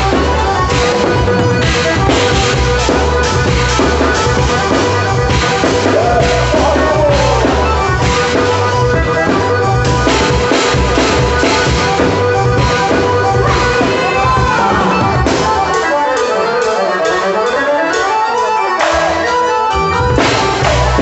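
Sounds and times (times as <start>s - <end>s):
dance music with drums and bass: 0.0s - 15.9s, 18.7s - 21.0s.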